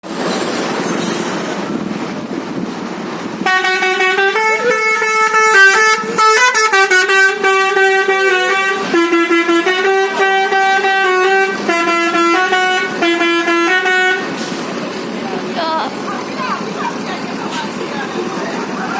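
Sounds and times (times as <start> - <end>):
musical air horn melody: 3.4 - 14.5.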